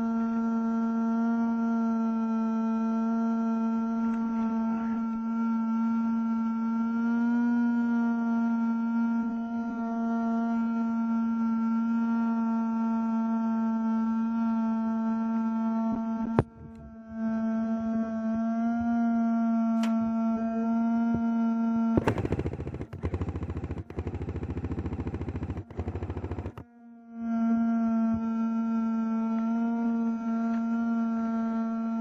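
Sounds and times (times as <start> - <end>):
small fan buzzing whine: 0.0 - 32.0.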